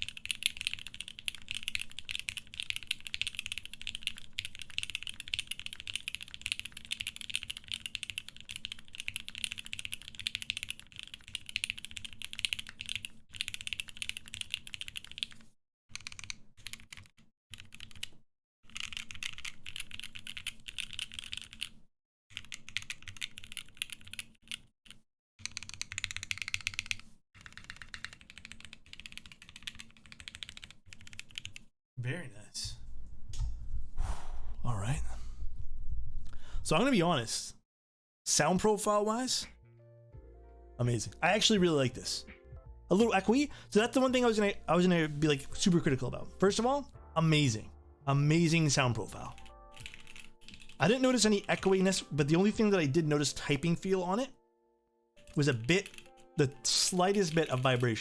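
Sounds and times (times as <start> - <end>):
mechanical keyboard typing: 0.0 - 31.7, 48.6 - 52.0, 55.2 - 58.0.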